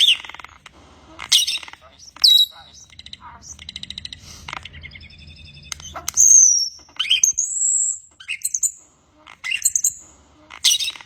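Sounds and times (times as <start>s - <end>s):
bird whistling and chirping: 0.0s - 0.5s, 1.2s - 11.0s.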